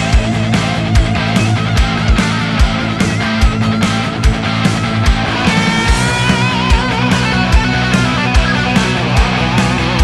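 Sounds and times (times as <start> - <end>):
rock music with drums and guitar: 0.0 - 10.0.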